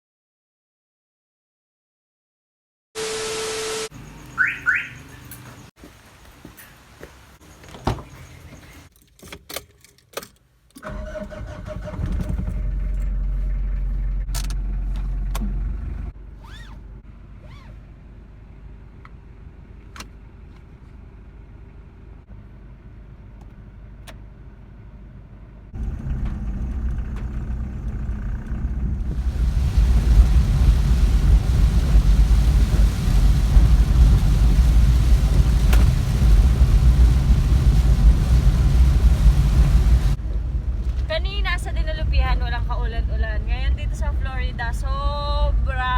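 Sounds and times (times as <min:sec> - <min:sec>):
car pulling away: 0:10.8 - 0:18.0, 0:22.8 - 0:41.0
car engine starting and idling: 0:10.8 - 0:45.9.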